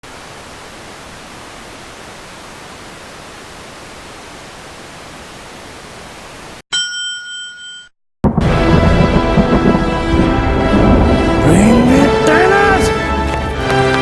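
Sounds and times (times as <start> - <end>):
steady static hiss: 0.0 - 6.6
bright bell-like ding: 6.7 - 7.9.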